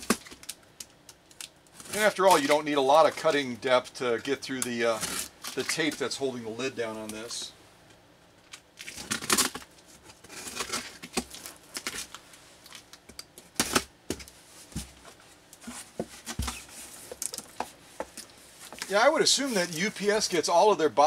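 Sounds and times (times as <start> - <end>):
cardboard rustling: 1.8 - 3.3, 14.1 - 20.3.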